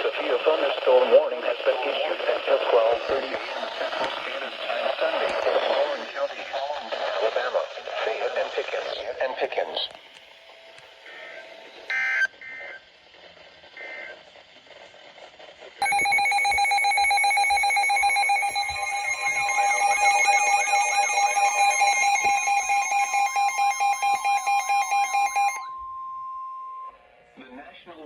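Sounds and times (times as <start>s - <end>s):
electronic data bursts: 15.8s - 25.6s
steady alert tone: 15.8s - 25.7s
warbling tone: 15.8s - 25.7s
rapid pulsing beep: 15.8s - 26.9s.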